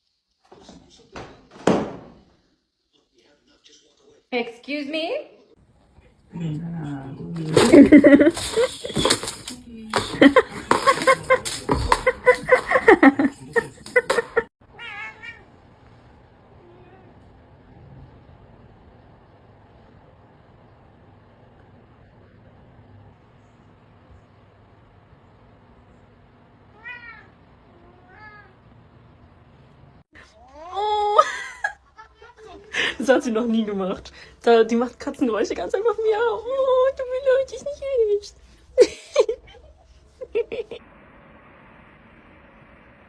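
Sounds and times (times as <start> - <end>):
cat meowing: 14.7 - 15.5, 26.7 - 28.6.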